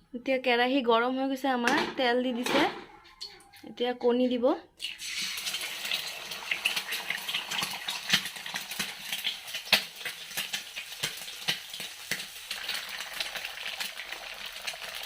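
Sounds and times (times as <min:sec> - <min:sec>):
hot oil sizzling: 0:04.8 - 0:15.0.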